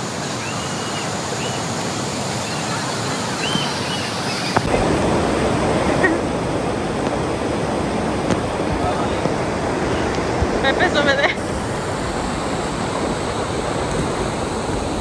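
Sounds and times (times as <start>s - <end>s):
waterfall and river rushing: 0.0s - 15.0s.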